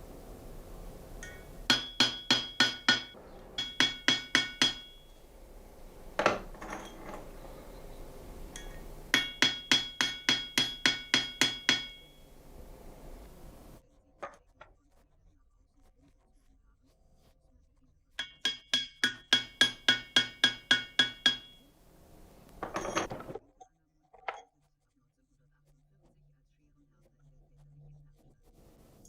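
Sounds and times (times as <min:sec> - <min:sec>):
hammer striking steel: 0:01.2 - 0:05.3, 0:08.5 - 0:12.4, 0:18.2 - 0:21.7.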